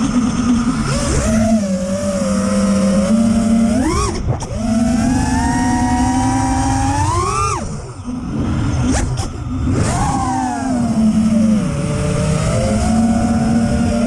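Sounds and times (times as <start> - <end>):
drone motors whining: 0.0 - 14.0.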